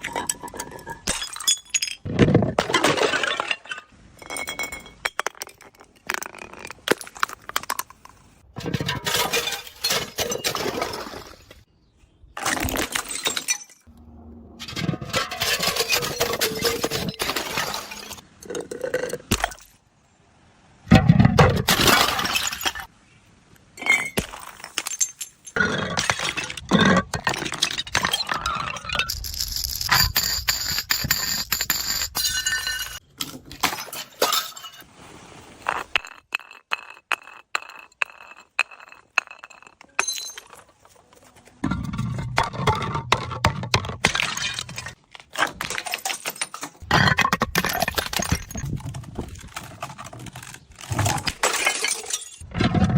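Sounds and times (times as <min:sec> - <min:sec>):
glass pieces clinking: 0:00.0 - 0:02.1, 0:03.0 - 0:07.8, 0:14.7 - 0:18.2, 0:23.8 - 0:34.8, 0:35.7 - 0:41.0, 0:45.6 - 0:52.4
glass bottles shattering: 0:00.0 - 0:07.3, 0:08.6 - 0:11.5, 0:12.4 - 0:13.9, 0:14.7 - 0:18.2, 0:21.5 - 0:22.9, 0:23.8 - 0:34.9, 0:35.6 - 0:40.9, 0:41.6 - 0:52.5.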